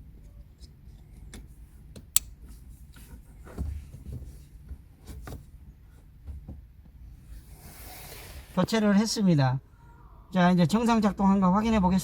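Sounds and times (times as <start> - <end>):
sharp switch click: 2.1 - 2.3.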